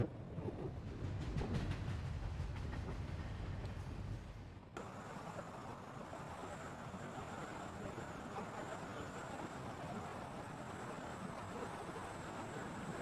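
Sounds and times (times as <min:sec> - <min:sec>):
faint high whine: 0:04.8 - 0:13.0.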